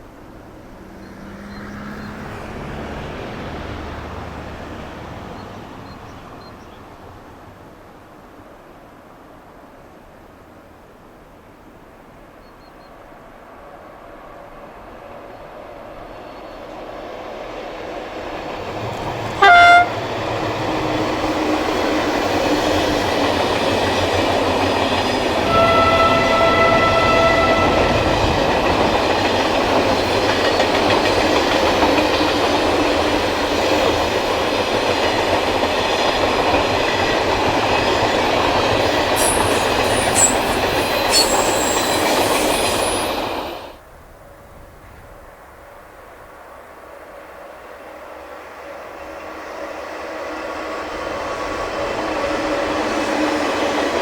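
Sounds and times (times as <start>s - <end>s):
train rumbling past: 0.0s - 9.7s, 10.6s - 54.0s
train horn blasts: 19.3s - 20.2s, 25.4s - 28.6s.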